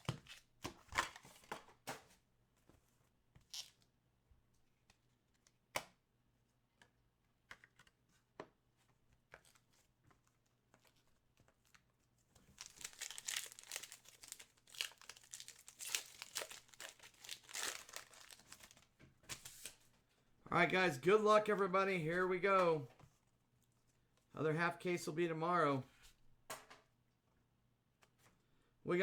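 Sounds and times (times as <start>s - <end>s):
plastic wrapping tearing and crinkling: 12.4s - 19.8s.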